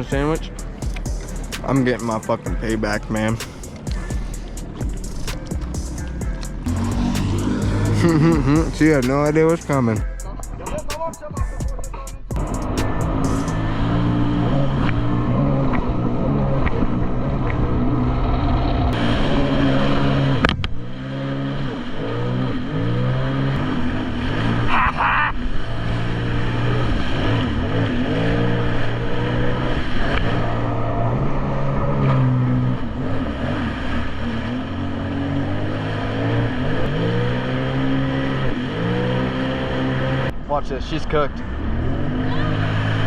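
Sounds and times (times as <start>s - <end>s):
jet ski engine revving: 0.0s - 10.1s, 12.3s - 40.3s, 41.1s - 43.0s
sharp click: 5.0s - 6.5s.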